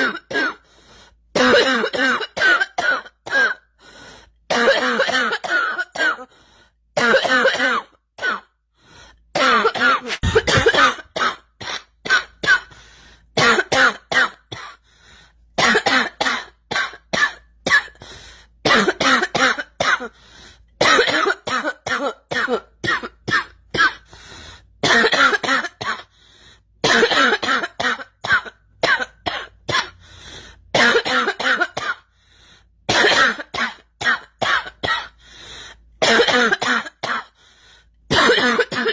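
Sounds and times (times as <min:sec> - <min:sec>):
girl coughing: 0:00.0 - 0:00.6, 0:01.4 - 0:03.7, 0:04.5 - 0:06.3, 0:07.0 - 0:08.6, 0:09.4 - 0:12.7, 0:13.4 - 0:14.8, 0:15.6 - 0:18.0, 0:18.6 - 0:20.2, 0:20.8 - 0:24.1, 0:24.8 - 0:26.1, 0:26.8 - 0:30.0, 0:30.8 - 0:32.1, 0:32.9 - 0:35.2, 0:36.0 - 0:37.4, 0:38.1 - 0:38.9.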